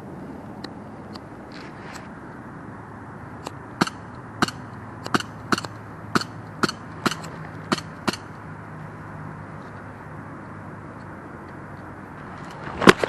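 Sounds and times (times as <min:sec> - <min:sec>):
airsoft rifle shots: 0:03.8 - 0:08.3.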